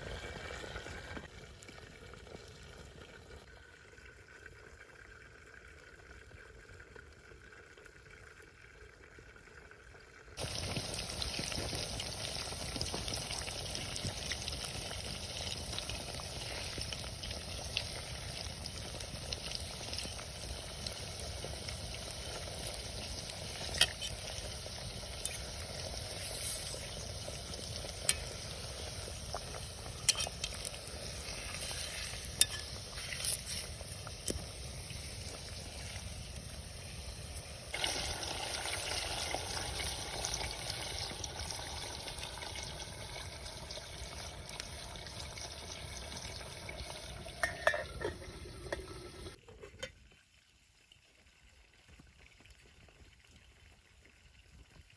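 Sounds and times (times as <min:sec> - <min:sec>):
food sizzling in hot oil: 0:10.4 - 0:49.4.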